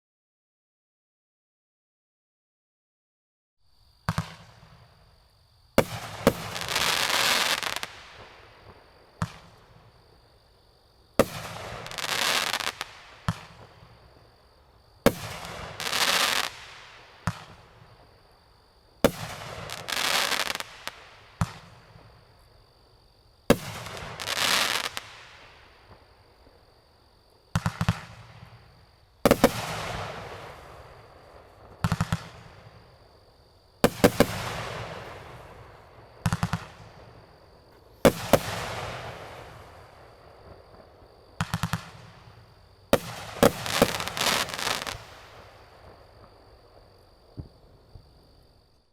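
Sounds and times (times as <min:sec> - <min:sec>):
firework bangs: 0:04.0 - 0:05.0, 0:05.8 - 0:09.8, 0:11.2 - 0:14.0, 0:15.0 - 0:17.9, 0:19.0 - 0:22.2, 0:23.5 - 0:26.1, 0:27.5 - 0:32.9, 0:33.8 - 0:37.4, 0:38.0 - 0:46.5
firework crackling: 0:05.8 - 0:08.4, 0:11.2 - 0:13.9, 0:15.1 - 0:17.6, 0:19.1 - 0:21.8, 0:23.5 - 0:25.5, 0:42.9 - 0:46.0.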